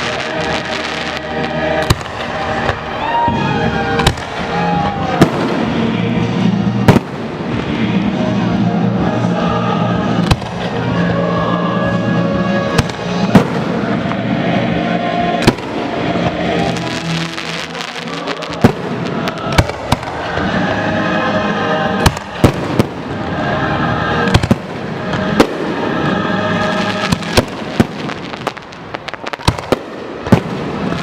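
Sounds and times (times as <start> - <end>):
fireworks bangs: 0.0 - 8.0, 12.6 - 14.3, 15.4 - 20.7, 22.0 - 23.5, 24.2 - 31.0
music playing: 0.0 - 31.0.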